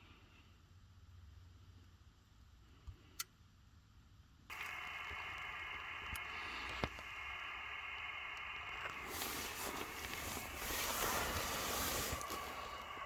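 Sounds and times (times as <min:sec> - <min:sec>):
radio band hiss: 0:04.5 - 0:13.0.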